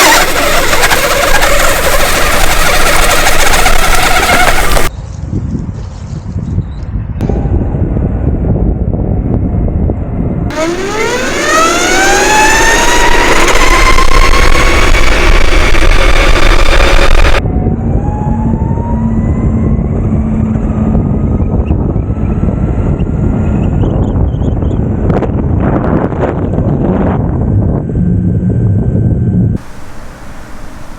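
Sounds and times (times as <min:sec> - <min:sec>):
electric motor whining: 0:00.0 - 0:04.9, 0:10.5 - 0:17.4, 0:29.6 - 0:30.9
wind noise on microphone: 0:00.0 - 0:30.9.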